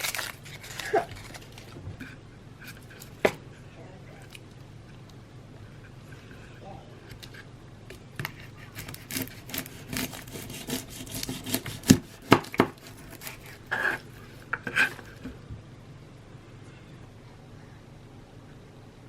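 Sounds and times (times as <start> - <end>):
rubbing and scraping: 8.2 - 15.4.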